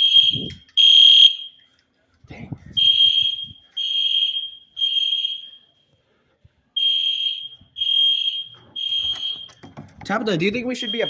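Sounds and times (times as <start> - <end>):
fire alarm beeping: 0.0 - 1.7, 2.7 - 5.9, 6.8 - 9.7, 10.7 - 11.0.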